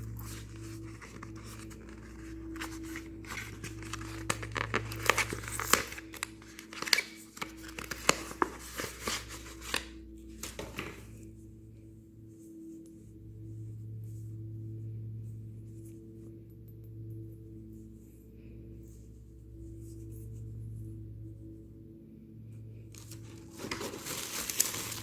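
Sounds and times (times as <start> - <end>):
packaging crinkling and tearing: 0.0 - 11.0, 23.0 - 25.0
soft background music: 0.0 - 25.0.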